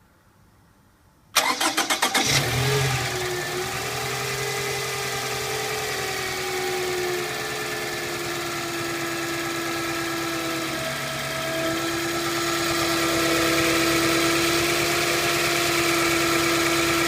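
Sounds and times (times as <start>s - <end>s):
starter cranking engine: 1.4s - 3.2s
constant engine whine: 1.4s - 17.0s
engine idling: 1.4s - 17.0s.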